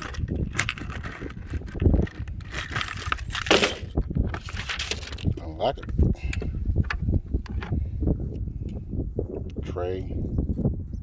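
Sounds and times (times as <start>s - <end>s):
tool box latch and lid clinking: 0.0s - 7.8s.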